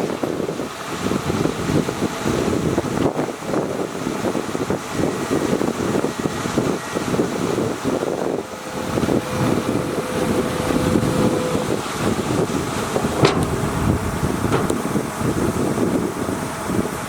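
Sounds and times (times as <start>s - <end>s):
diesel engine under load: 0.0s - 17.0s
wind buffeting microphone: 0.0s - 17.0s
steady whine: 1.8s - 17.0s.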